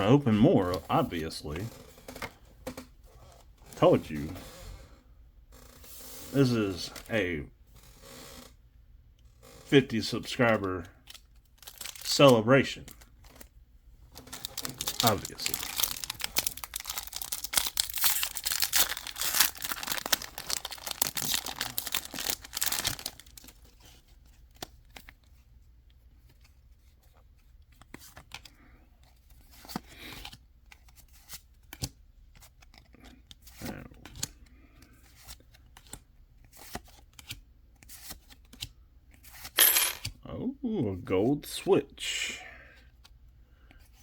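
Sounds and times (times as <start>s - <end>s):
cards clicking and rustling: 10.3s - 13.5s, 14.1s - 25.4s, 26.2s - 40.2s
foil wrapper crinkling and tearing: 11.6s - 12.2s, 14.2s - 23.7s.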